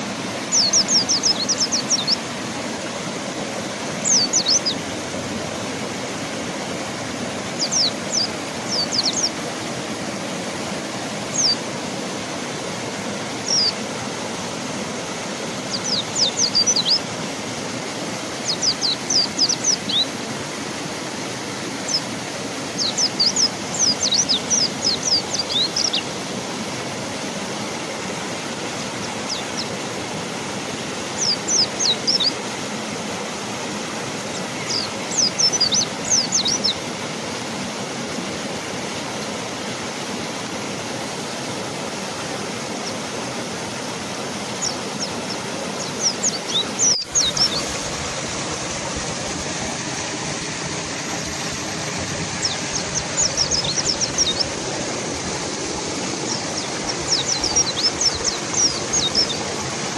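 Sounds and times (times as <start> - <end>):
bird chirping: 0.0 - 2.2, 4.0 - 4.8, 7.5 - 9.4, 11.3 - 11.6, 13.4 - 13.8, 15.7 - 17.0, 18.4 - 20.1, 22.8 - 26.1, 29.0 - 29.7, 31.2 - 32.4, 34.3 - 36.8, 44.6 - 47.8, 51.8 - 54.6, 56.2 - 59.6
river water rushing: 0.0 - 59.9.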